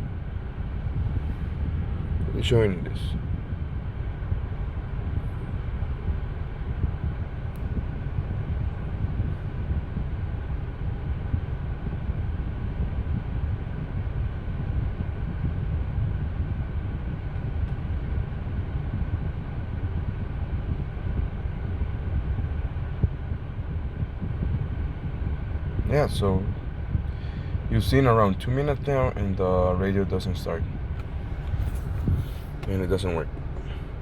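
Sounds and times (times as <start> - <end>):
car engine idling: 24.9 - 34.0.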